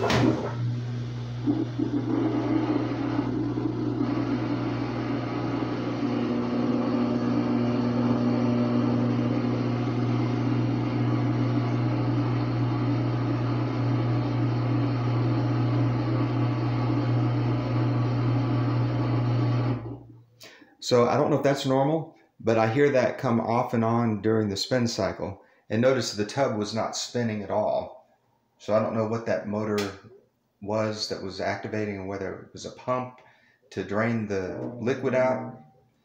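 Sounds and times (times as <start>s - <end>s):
washer drain pump grinding hum: 0.0s - 20.1s, 34.2s - 35.6s.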